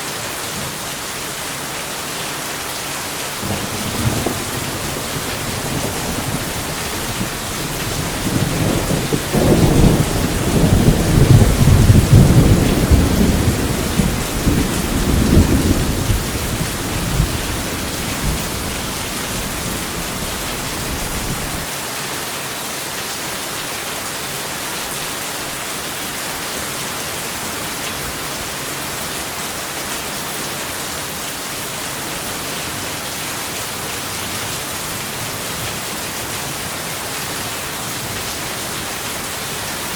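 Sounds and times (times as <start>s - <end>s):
heavy rain hissing: 0.1s - 21.7s
rolling thunder rumble: 3.4s - 21.7s.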